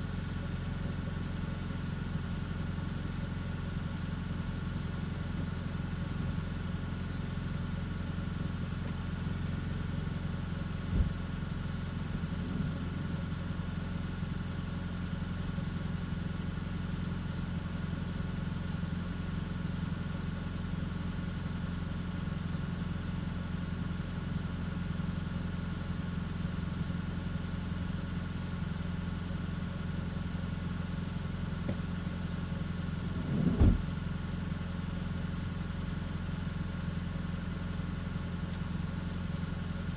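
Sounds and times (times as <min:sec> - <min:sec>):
low mechanical hum: 0:00.0 - 0:39.9
short knock: 0:10.9 - 0:11.2, 0:33.1 - 0:34.0.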